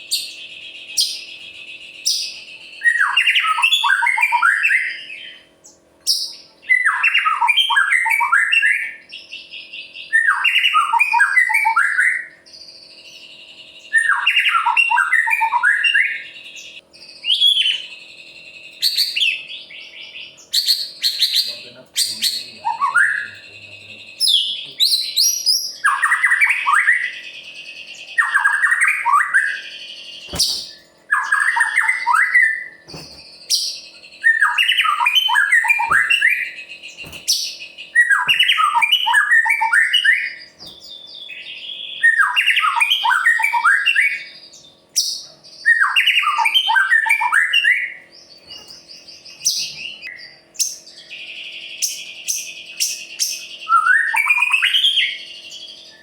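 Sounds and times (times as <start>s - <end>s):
harsh rasping bird trill: 0.0s - 56.0s
songbird singing falling notes: 28.1s - 44.4s.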